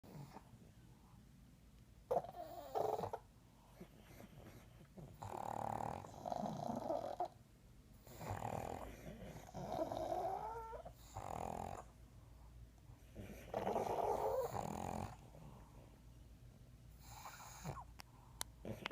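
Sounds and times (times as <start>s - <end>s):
dogs snoring with whistle: 2.1s - 3.2s, 3.8s - 7.4s, 8.0s - 11.9s, 13.1s - 15.2s, 17.0s - 17.9s, 18.6s - 18.9s.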